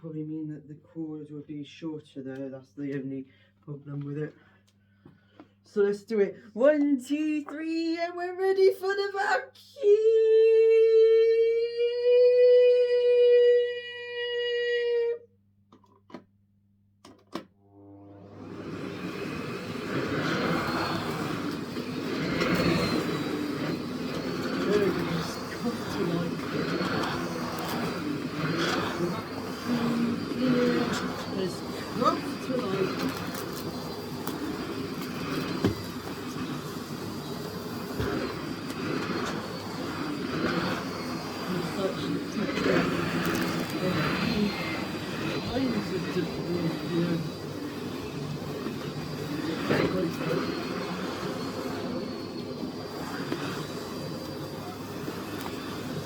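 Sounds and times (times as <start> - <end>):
vacuum cleaner motor starting: 17.3 - 56.0.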